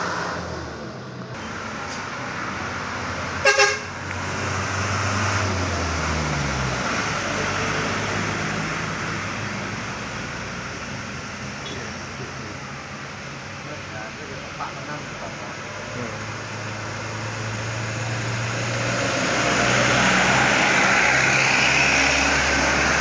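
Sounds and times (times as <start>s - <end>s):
heavy vehicle engine running: 0.0s - 23.0s
vehicle horn toots: 3.4s - 4.0s.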